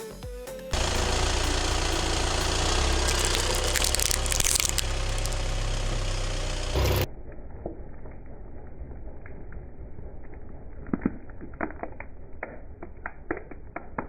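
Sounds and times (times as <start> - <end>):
car engine running: 0.8 - 7.1
tyre crushing something crunchy: 3.0 - 5.4.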